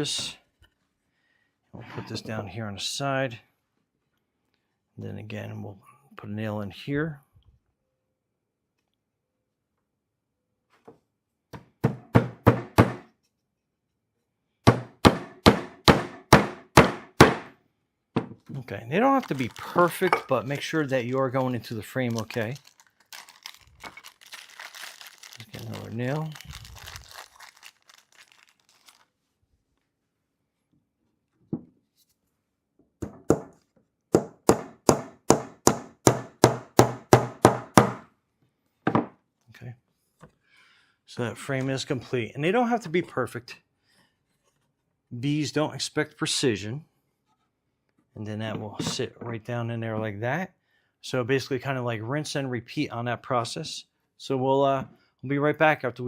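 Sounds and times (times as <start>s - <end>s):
hammer striking a nail into wood: 11.6s - 13.1s, 14.7s - 17.5s, 33.0s - 38.0s.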